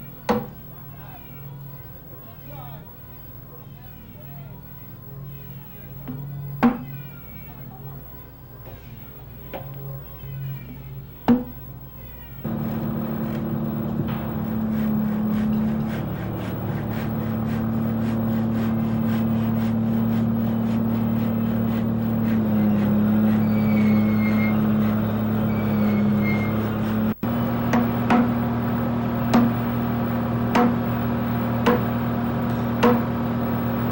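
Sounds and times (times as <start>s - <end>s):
motor running steadily: 12.1s - 33.9s.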